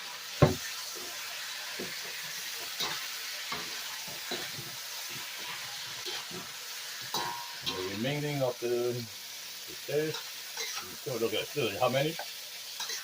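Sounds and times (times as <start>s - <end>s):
food sizzling in a pan: 0.0s - 13.0s
spatula knocking and scraping pan: 0.4s - 0.7s, 1.8s - 7.8s.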